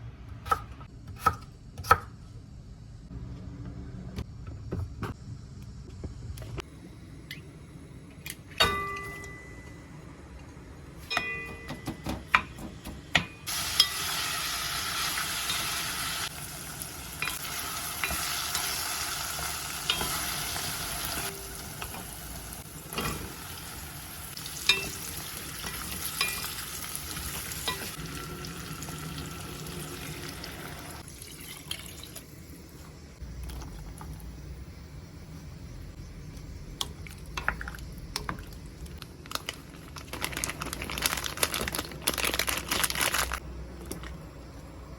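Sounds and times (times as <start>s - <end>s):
utensils clinking on cookware: 8.5s - 10.0s, 11.0s - 14.3s, 17.2s - 18.8s, 19.7s - 22.2s, 24.5s - 28.0s
food sizzling in frying pan: 13.5s - 32.2s.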